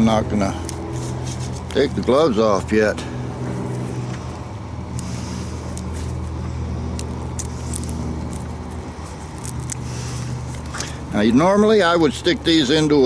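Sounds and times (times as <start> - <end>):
low mechanical motor hum: 0.0 - 13.0
sharp crackles and clicks: 4.9 - 11.0.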